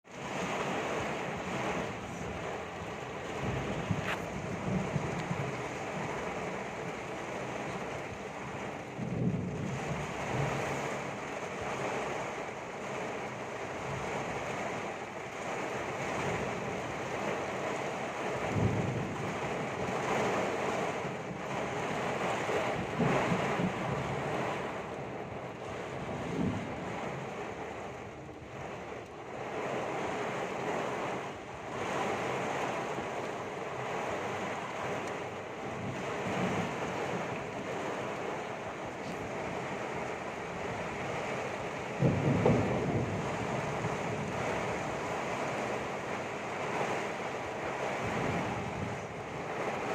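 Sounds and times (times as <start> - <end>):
strong gusting wind: 0.1 - 49.9
wind buffeting microphone: 0.2 - 17.4, 18.1 - 49.9.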